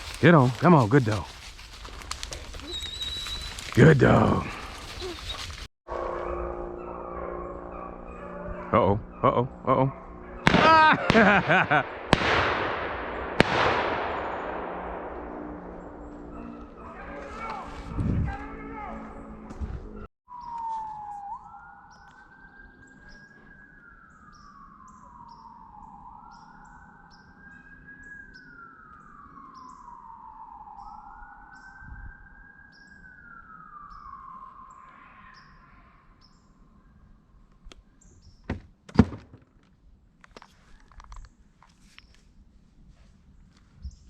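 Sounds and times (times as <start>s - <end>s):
siren wailing: 2.5s - 11.9s, 14.4s - 37.2s.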